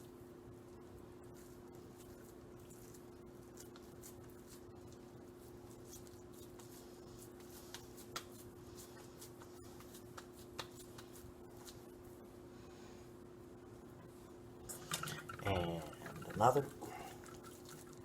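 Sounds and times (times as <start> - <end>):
steady low hum: 0.0 - 18.0
squishing and patting of raw meat: 0.6 - 12.3, 15.9 - 18.0
light tapping sounds: 7.4 - 11.8.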